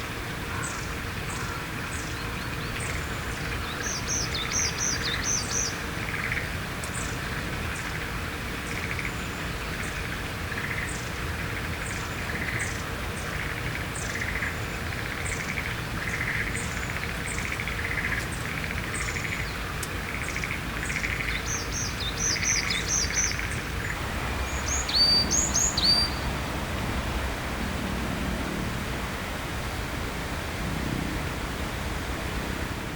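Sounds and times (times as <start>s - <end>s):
buzzy bird calls: 21.6s - 30.5s
high bird trills: 23.3s - 29.4s.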